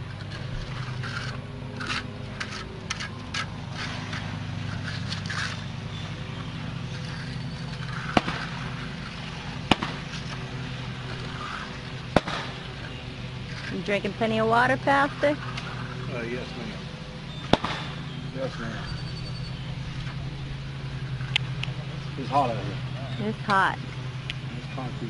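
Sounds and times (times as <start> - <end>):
hand tool scraping wet concrete: 0.0 - 12.1, 12.7 - 14.0
engine hum: 0.0 - 25.0.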